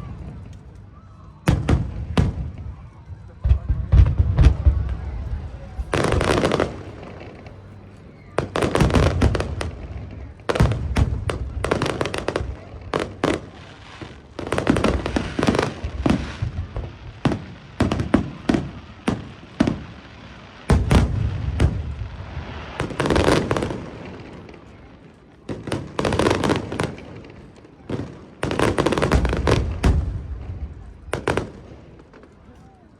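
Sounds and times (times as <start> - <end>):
firework crackling: 0.0 - 32.8
firework shells booming: 20.7 - 22.0.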